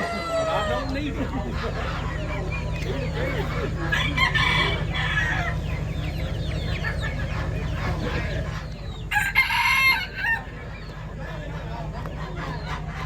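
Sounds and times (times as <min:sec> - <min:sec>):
rooster crowing: 0:00.0 - 0:01.0, 0:03.8 - 0:05.8, 0:09.0 - 0:10.6
chickens clucking: 0:00.0 - 0:13.0
steady low hum: 0:00.0 - 0:13.0.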